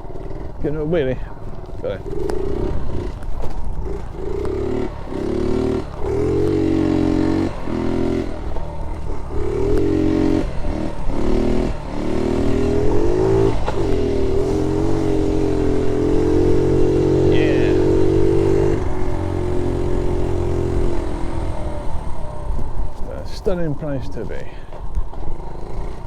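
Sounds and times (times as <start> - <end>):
small motorbike engine revving: 0.0 - 24.0, 24.6 - 26.0.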